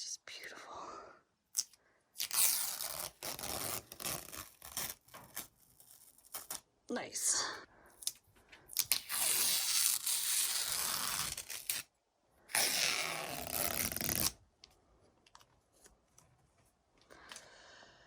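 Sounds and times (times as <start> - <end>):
tape tearing off a wall: 1.6 - 6.7, 8.0 - 11.9, 12.5 - 14.4.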